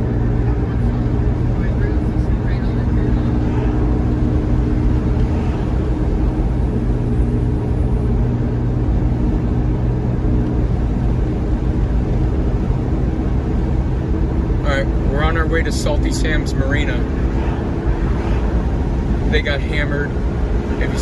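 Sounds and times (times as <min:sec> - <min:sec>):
car road and engine noise: 0:00.0 - 0:21.0.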